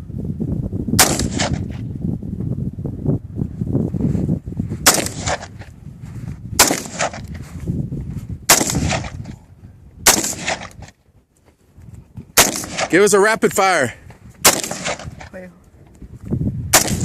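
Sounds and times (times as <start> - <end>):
rifle shots: 1.0 - 1.8, 4.8 - 5.6, 6.6 - 7.3, 8.5 - 9.3, 10.0 - 10.9, 12.4 - 13.2, 14.4 - 15.4, 16.7 - 17.0.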